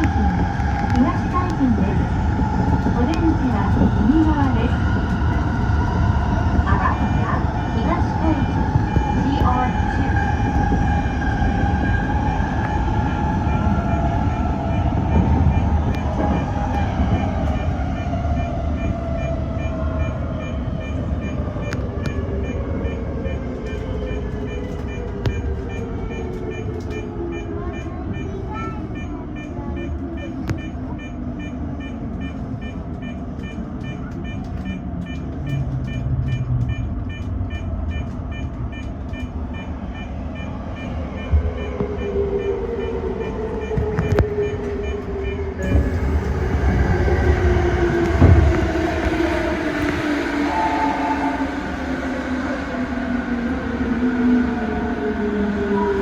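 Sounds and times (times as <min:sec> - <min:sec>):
train wheels rumbling on rails: 0:00.0 - 0:56.0
electric train motor whine: 0:40.1 - 0:56.0.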